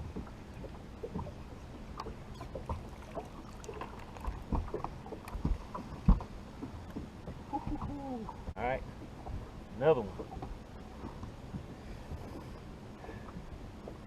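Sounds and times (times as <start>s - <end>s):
low thumps on boat: 0.0s - 14.0s
light knocks on boat: 2.0s - 9.5s.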